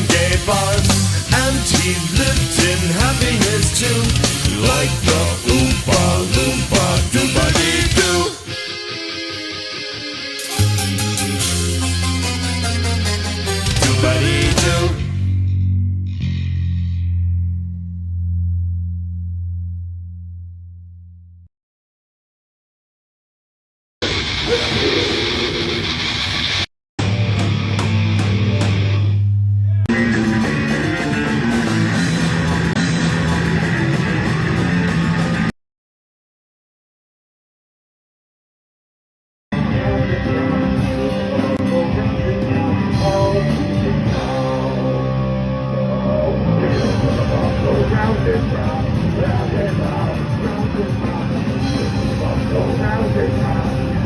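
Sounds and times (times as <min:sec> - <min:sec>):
instrumental heavy rock: 0:00.0 - 0:15.5, 0:24.0 - 0:35.5, 0:39.6 - 0:54.0.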